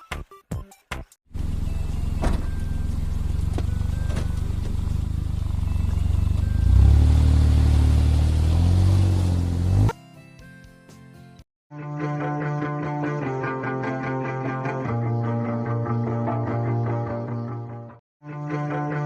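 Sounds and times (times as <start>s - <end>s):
engine running: 1.3s - 9.9s.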